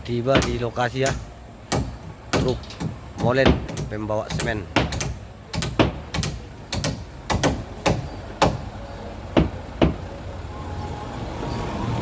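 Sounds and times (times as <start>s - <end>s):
sharp knocks: 0.3s - 8.6s.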